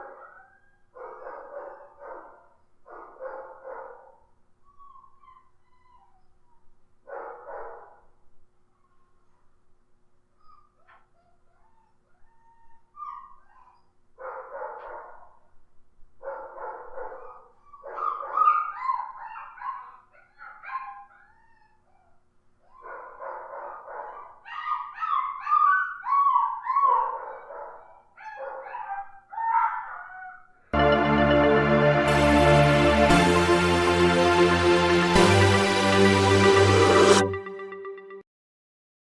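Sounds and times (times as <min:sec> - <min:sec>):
dog barking and yelping: 0:00.0 - 0:04.2, 0:07.1 - 0:08.0, 0:10.4 - 0:15.3, 0:16.2 - 0:30.5
high pitch-bending dog yips: 0:17.1 - 0:22.1.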